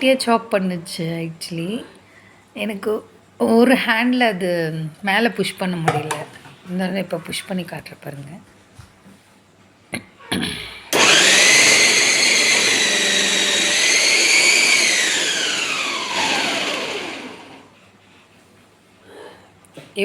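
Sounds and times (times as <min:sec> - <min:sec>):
mixer grinder motor whining: 0:10.9 - 0:17.8.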